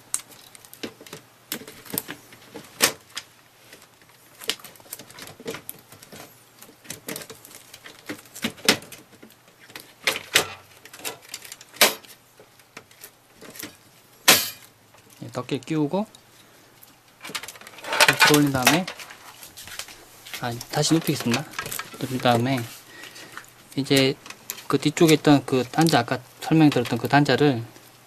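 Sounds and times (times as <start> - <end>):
loud plastic snaps: 0.0 - 3.3, 4.4 - 14.8.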